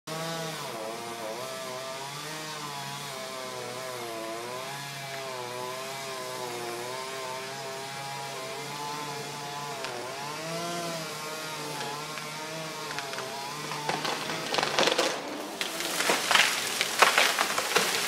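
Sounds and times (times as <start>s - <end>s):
chainsaw engine running: 0.1s - 18.0s.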